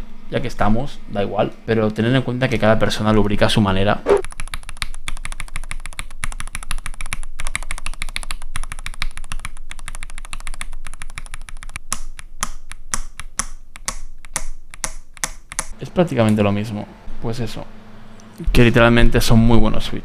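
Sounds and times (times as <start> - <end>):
mechanical keyboard typing: 4.2 - 15.7.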